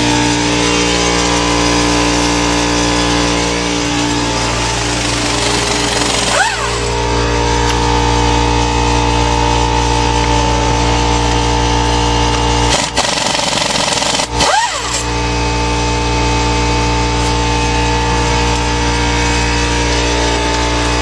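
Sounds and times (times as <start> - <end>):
motor humming: 0.0 - 21.0
rising and falling whine: 0.0 - 21.0.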